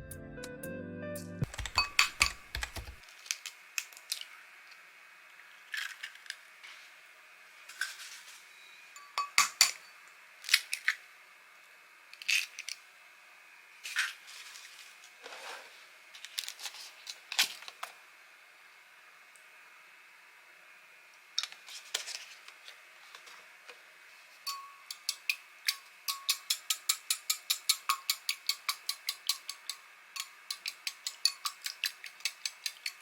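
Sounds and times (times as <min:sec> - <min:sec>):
dishes and utensils clinking: 0:01.5 - 0:03.0, 0:09.0 - 0:09.9, 0:24.5 - 0:25.4, 0:26.1 - 0:33.0.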